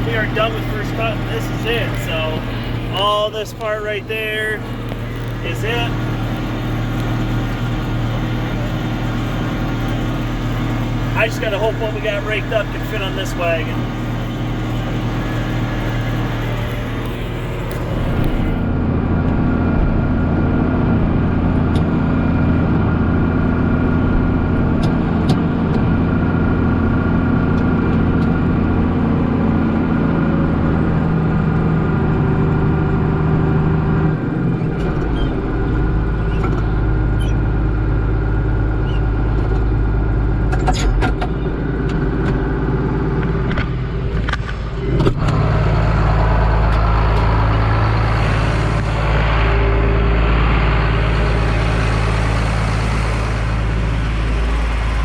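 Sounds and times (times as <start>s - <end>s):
diesel tractor engine running: 0.0s - 55.0s.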